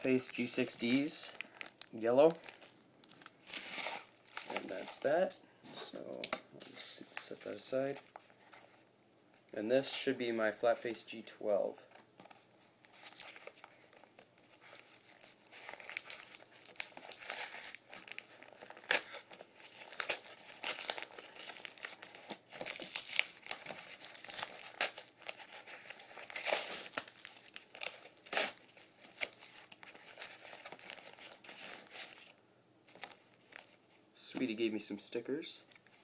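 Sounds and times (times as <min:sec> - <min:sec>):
packaging crinkling and tearing: 0:00.0 - 0:05.2, 0:12.2 - 0:33.8.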